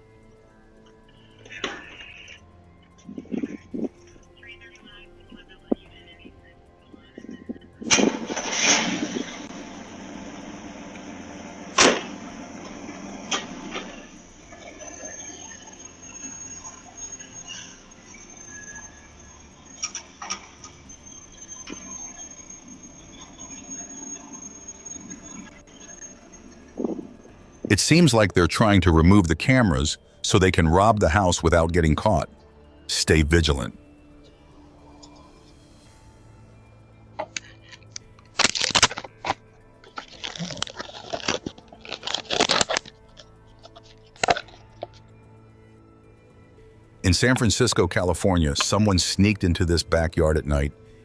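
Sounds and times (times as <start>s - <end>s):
high-pitched electronic whine: 0.0s - 51.0s
quiet background music: 0.0s - 51.0s
crunching and scraping on microphone: 3.0s - 16.4s, 37.2s - 45.0s
sharp clicks: 37.2s - 45.1s.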